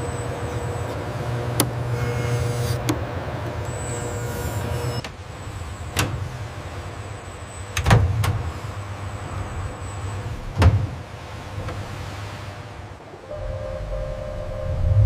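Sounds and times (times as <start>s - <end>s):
factory machinery humming: 0.0s - 15.0s
thin high whine: 3.6s - 5.9s, 13.2s - 15.0s.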